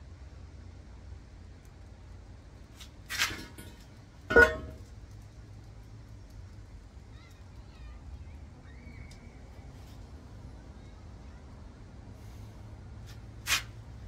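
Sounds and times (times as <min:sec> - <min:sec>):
metal parts clanking: 0:03.1 - 0:04.8.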